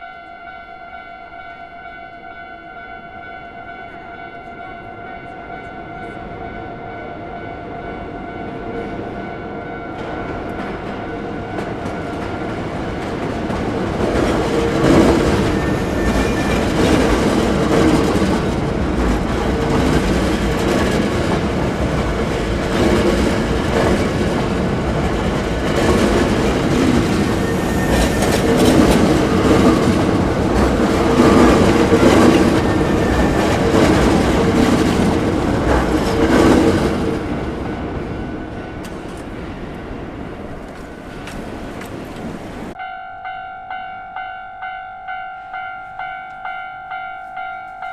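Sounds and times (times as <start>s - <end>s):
crossing warning bell: 0.0s - 39.7s, 42.7s - 47.9s
electric train rumbling: 0.0s - 47.9s
wheels clattering over rail joints: 10.0s - 38.2s.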